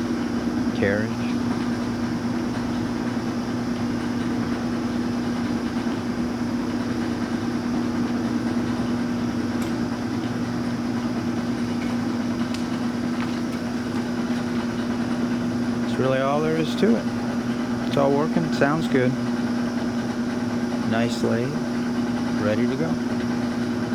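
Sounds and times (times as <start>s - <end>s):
lathe motor and gearbox hum: 0.0s - 23.9s.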